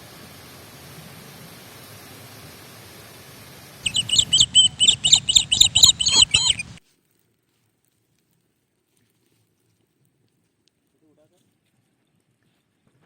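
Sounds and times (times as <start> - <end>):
steady hiss: 0.0 - 6.8
bird chirping loudly: 3.8 - 6.8.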